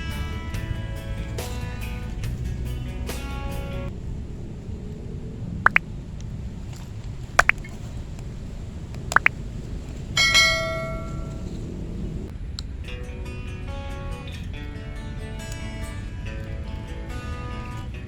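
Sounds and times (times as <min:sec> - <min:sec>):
outdoor background noise: 0:00.0 - 0:18.0
ringing bell ding: 0:10.2 - 0:11.3.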